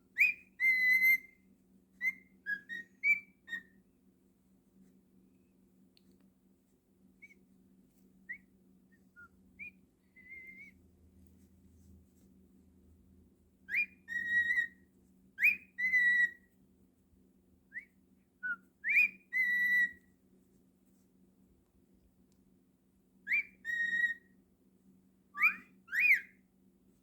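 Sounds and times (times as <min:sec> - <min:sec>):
cockatiel chirps: 0:00.1 - 0:01.4, 0:02.0 - 0:03.8, 0:13.7 - 0:14.8, 0:15.4 - 0:16.5, 0:18.4 - 0:20.0, 0:23.3 - 0:24.3, 0:25.3 - 0:26.4
cockatiel whistling: 0:00.2 - 0:01.4, 0:02.0 - 0:03.8, 0:09.1 - 0:10.8, 0:13.7 - 0:14.8, 0:15.4 - 0:16.5, 0:17.8 - 0:20.0, 0:23.3 - 0:24.3, 0:25.4 - 0:26.4.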